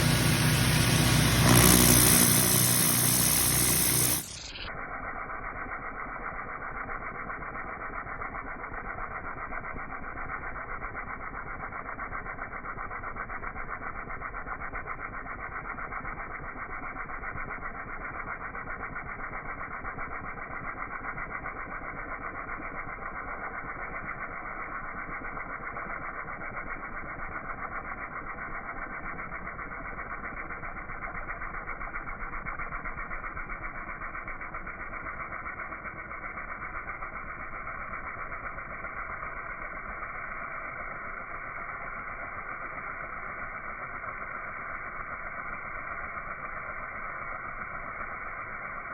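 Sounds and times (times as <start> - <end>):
pressure washer running: 0.0 - 4.6.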